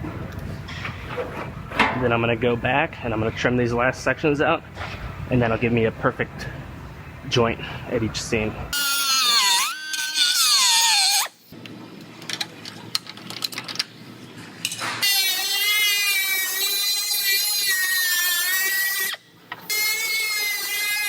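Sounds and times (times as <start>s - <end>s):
power tool whining: 8.8s - 11.5s.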